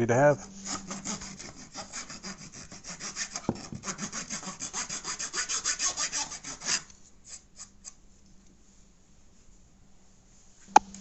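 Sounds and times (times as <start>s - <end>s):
file rasping: 0.4s - 7.7s.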